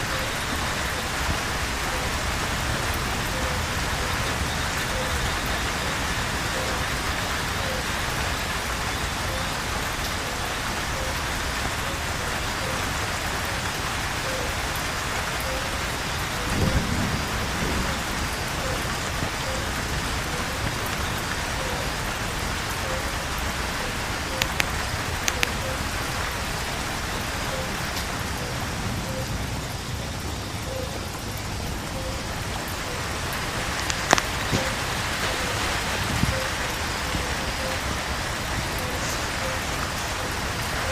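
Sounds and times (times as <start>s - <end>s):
heavy rain on foliage: 0.0s - 40.9s
low rumble of thunder: 16.0s - 22.9s
drips clicking: 24.4s - 25.8s.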